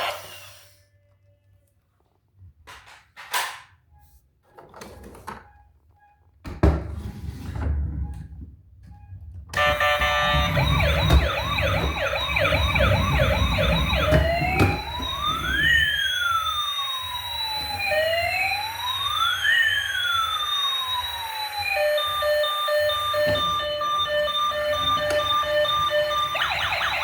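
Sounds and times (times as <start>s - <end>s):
toy siren: 0.0s - 1.2s, 9.6s - 27.0s.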